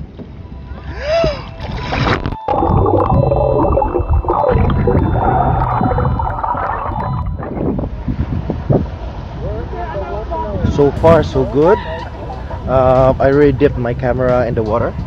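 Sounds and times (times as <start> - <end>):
water gurgling underwater: 2.0 - 7.9.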